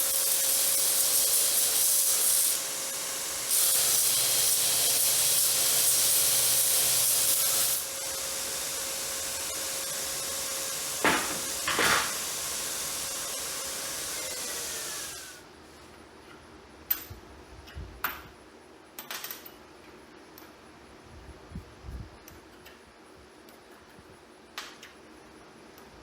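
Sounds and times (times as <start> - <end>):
surface grinder grinding steel: 0.0 - 15.4
grinder falling whine: 5.0 - 15.4.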